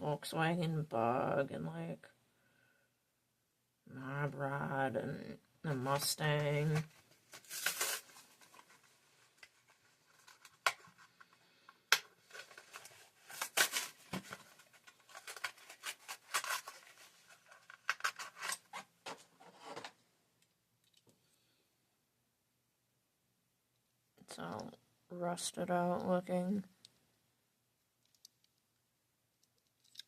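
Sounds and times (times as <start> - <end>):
blister pack crinkling and scraping: 5.9 - 19.9.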